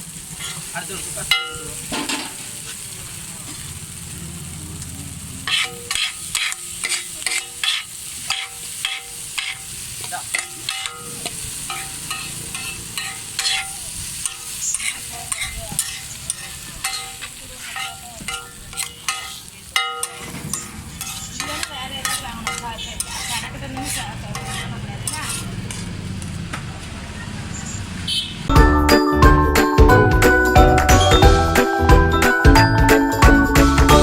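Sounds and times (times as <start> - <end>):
food sizzling: 0.0 - 34.0
steel spatulas clanging on griddle: 0.3 - 2.9, 5.4 - 25.9.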